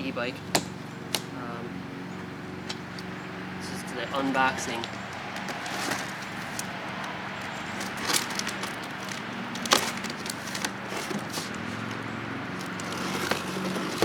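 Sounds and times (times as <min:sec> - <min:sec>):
cardboard box being handled: 0:04.6 - 0:06.8, 0:07.4 - 0:12.0, 0:12.6 - 0:14.0.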